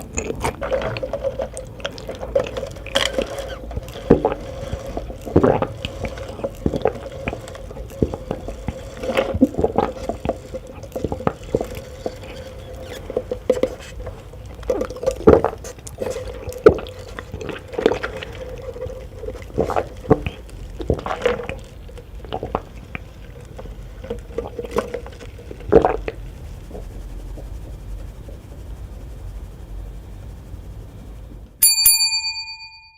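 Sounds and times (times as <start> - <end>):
person chewing wet food: 0.0 - 27.8
faint steady hum: 0.0 - 32.9.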